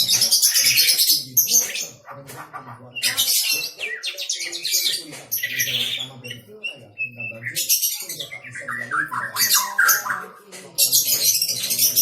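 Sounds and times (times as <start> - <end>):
bird singing trills and whistles: 2.9 - 12.0.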